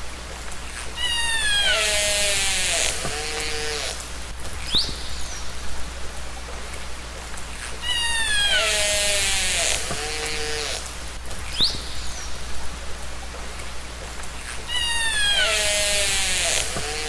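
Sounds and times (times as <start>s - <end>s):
orca calls underwater: 7.8s - 10.5s.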